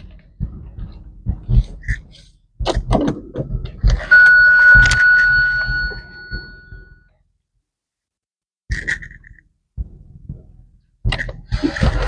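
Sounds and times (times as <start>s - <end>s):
bell-like chime: 4.1s - 6.9s.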